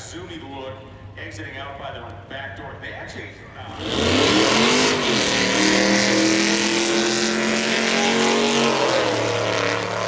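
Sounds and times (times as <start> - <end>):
drag racing car engine: 3.5 - 10.0.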